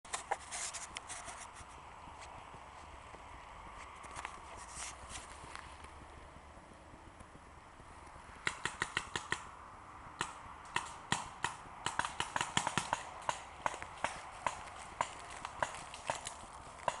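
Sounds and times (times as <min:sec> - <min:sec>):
paintball markers firing: 0:08.4 - 0:09.5, 0:10.1 - 0:17.0.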